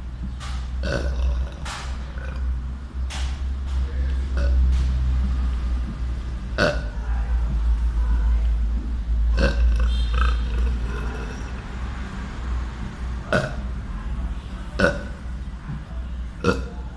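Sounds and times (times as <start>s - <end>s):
steady low hum: 0.0s - 16.9s
boy burping: 0.8s - 1.6s, 6.6s - 7.0s, 9.3s - 11.6s, 13.3s - 13.6s, 14.8s - 15.2s, 16.4s - 16.8s.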